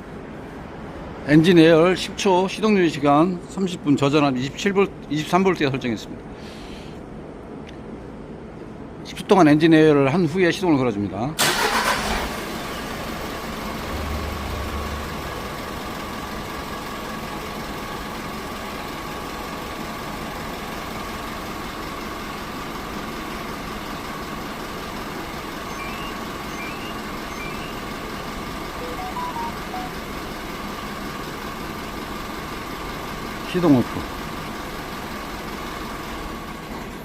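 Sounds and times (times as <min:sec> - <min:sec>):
diesel truck engine idling: 0:11.4 - 0:37.0.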